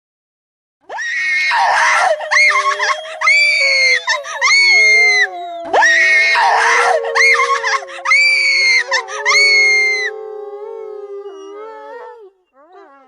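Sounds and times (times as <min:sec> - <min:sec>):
voices screaming together: 0:00.9 - 0:10.4
low moaning tone: 0:02.1 - 0:13.0.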